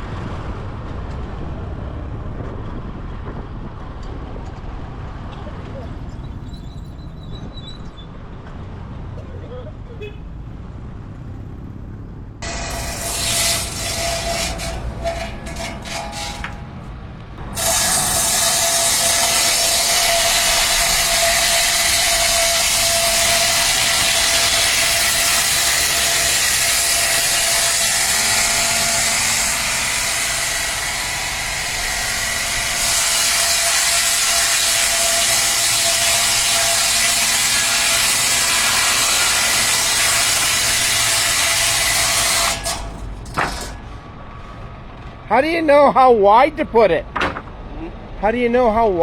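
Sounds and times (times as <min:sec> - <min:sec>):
saw blade cutting wood: 0:12.4 - 0:43.9, 0:47.2 - 0:47.6.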